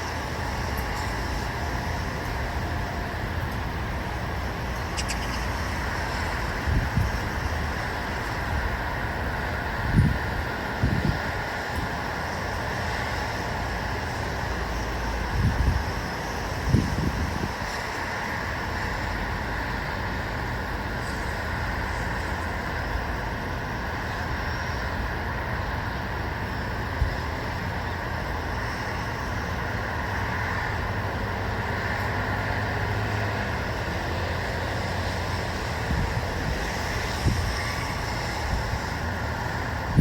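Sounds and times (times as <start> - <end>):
wind buffeting microphone: 0.0 - 28.8, 29.6 - 40.0
distant road traffic hum: 0.0 - 40.0.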